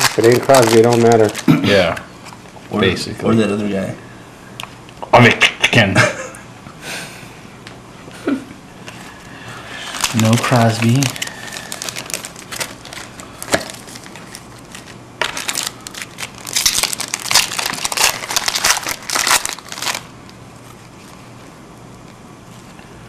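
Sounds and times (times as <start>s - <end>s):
wrapper tearing and crinkling: 0.0s - 1.6s, 9.8s - 21.2s.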